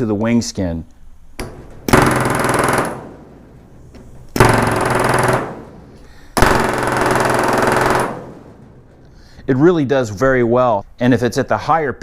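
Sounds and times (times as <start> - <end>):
pneumatic rivet gun hammering: 1.4 - 3.0, 4.0 - 8.2.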